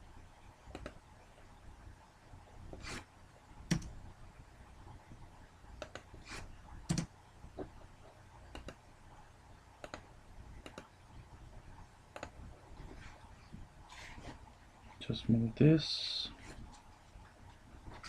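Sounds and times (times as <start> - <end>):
keyboard and mouse clicks: 0.7 - 1.0, 3.7 - 4.0, 5.8 - 6.1, 6.9 - 7.1, 8.5 - 8.8, 9.8 - 10.9, 12.1 - 12.4.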